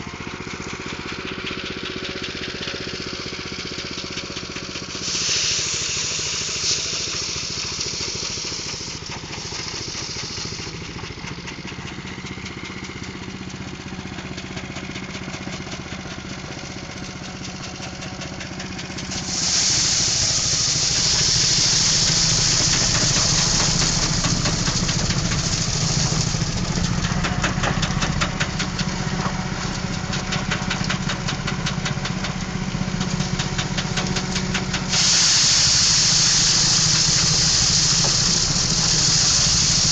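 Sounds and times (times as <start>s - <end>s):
engine drone: 0.0s - 39.9s
high hissing rush: 4.8s - 11.3s, 16.8s - 39.9s
fast fine ticking: 16.7s - 39.9s.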